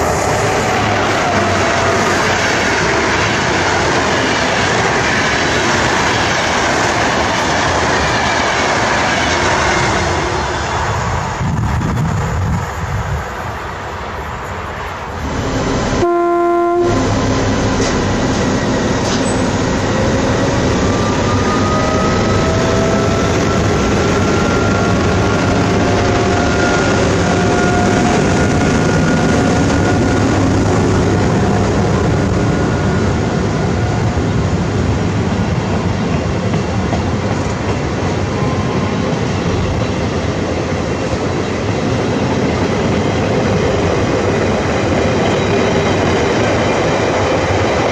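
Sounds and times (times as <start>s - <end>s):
train passing with wheel clatter: 0.0s - 47.9s
train horn blast: 16.0s - 17.2s.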